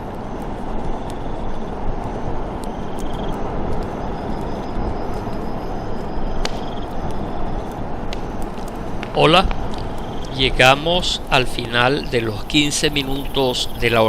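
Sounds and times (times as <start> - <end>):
rushing forest wind: 0.0 - 14.0
scattered ticks: 0.0 - 14.0.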